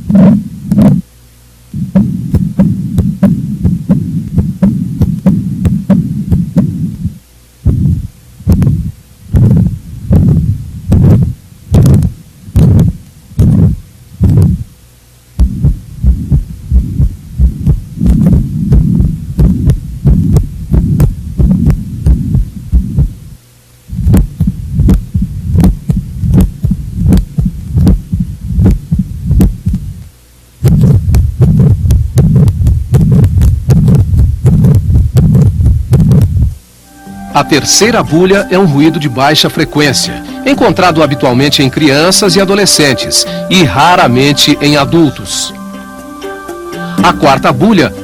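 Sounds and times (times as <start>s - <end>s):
heart murmur blowing sound: 0.0s - 1.0s, 1.8s - 14.8s, 15.4s - 30.0s, 30.6s - 36.6s
low heartbeats: 0.0s - 1.1s, 1.7s - 14.8s, 15.4s - 36.6s.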